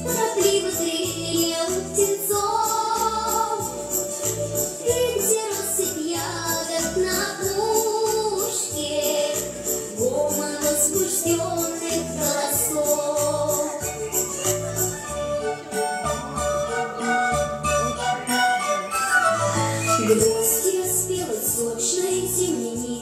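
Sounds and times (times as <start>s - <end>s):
young woman singing: 0.0s - 4.0s, 4.8s - 13.9s, 19.9s - 23.0s
jingling tambourine-like percussion: 0.0s - 16.2s, 20.0s - 23.0s.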